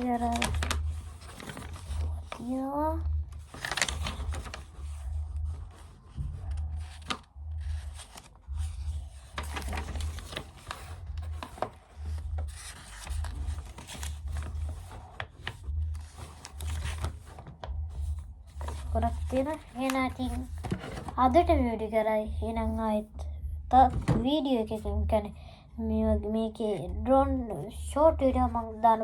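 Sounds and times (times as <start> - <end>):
handling noise rubbing and scraping: 0.0 - 21.4
low muffled rumble: 0.0 - 29.0.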